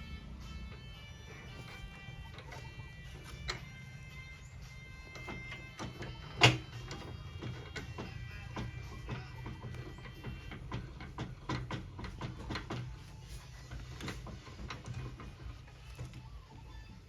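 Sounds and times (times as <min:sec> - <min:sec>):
clicks and knocks on metal parts: 0:04.7 - 0:16.3.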